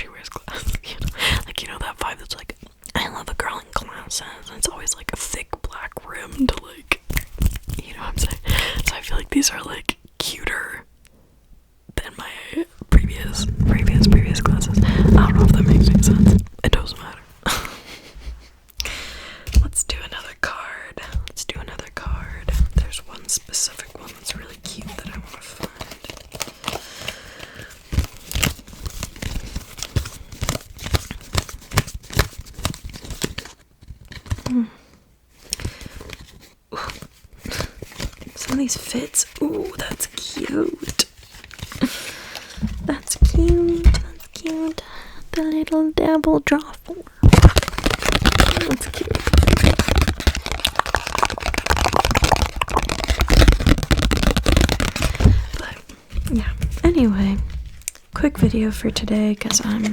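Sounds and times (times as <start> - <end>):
playing cards clicking and rustling: 24.7 - 34.5, 47.2 - 58.0.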